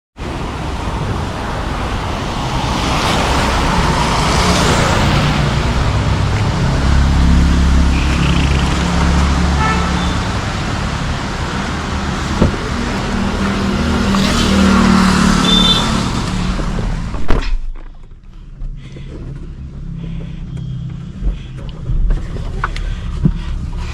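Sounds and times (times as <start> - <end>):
traffic rumble of engines and tyres: 0.2 - 23.9
vehicle horns tooting: 7.8 - 10.7, 12.0 - 16.5.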